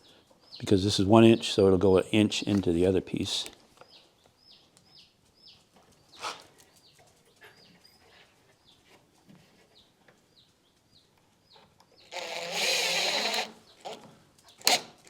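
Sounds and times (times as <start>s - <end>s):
small bird chirping: 3.8s - 8.9s, 9.7s - 12.2s.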